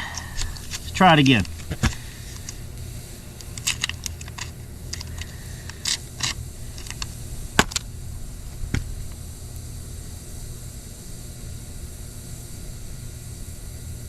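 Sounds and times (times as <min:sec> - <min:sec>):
tools clicking and scraping: 0:00.0 - 0:02.7, 0:03.3 - 0:07.8
low hum: 0:00.0 - 0:13.0.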